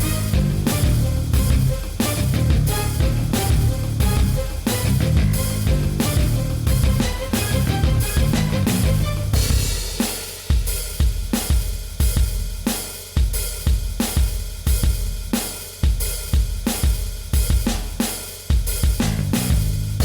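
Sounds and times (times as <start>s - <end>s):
backing music: 0.0s - 10.4s
drum kit steady beat: 0.0s - 20.0s.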